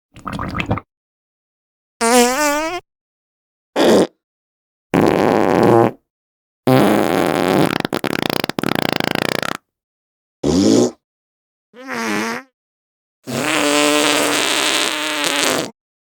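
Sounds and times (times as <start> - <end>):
fart sound effects: 2.0 - 2.8, 3.8 - 4.2, 5.0 - 6.0, 6.7 - 9.6, 10.4 - 11.0, 11.8 - 12.5, 13.3 - 15.8.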